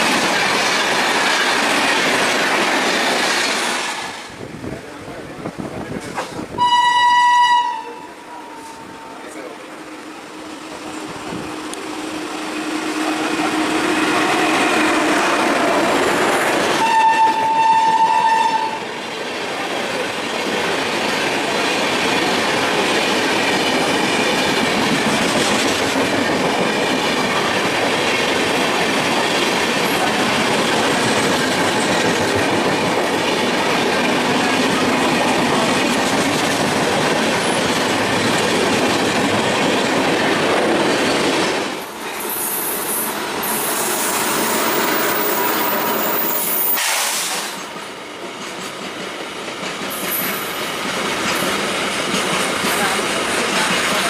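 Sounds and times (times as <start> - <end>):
train wheels rolling on rails: 0.0 - 54.0
train horn: 6.6 - 15.7, 16.7 - 18.9.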